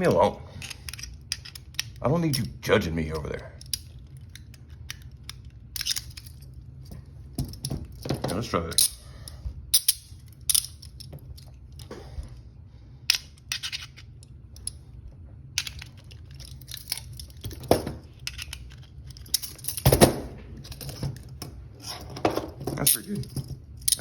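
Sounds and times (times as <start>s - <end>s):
steady low hum: 0.0s - 24.0s
metal clicks and rattles: 3.2s - 9.0s, 15.6s - 24.0s.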